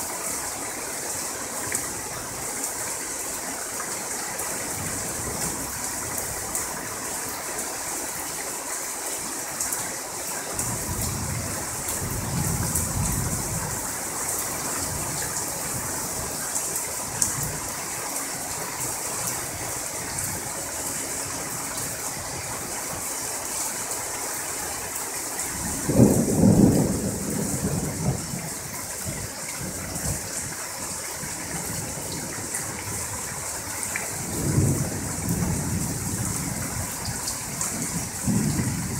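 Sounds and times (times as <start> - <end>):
heavy rain hissing: 0.0 - 38.9
thunder rumbling: 25.5 - 30.6, 34.2 - 38.9
sharp thunderclap: 37.9 - 38.9.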